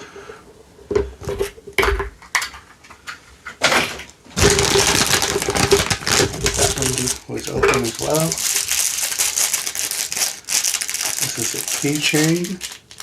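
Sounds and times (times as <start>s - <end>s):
plastic packaging crinkling: 4.3s - 13.0s.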